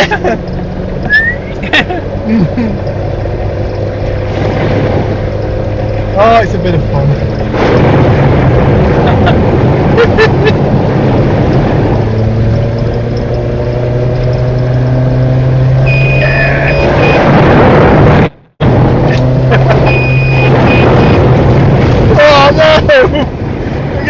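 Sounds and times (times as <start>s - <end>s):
water rushing against car: 0.0s - 13.3s, 18.7s - 24.0s
car engine running: 0.0s - 24.0s.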